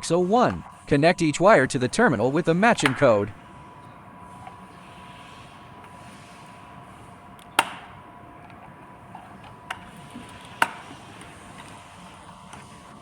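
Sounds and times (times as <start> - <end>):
faint steady hum: 0.0 - 13.0
sharp clicks of wires fitting: 2.2 - 11.9.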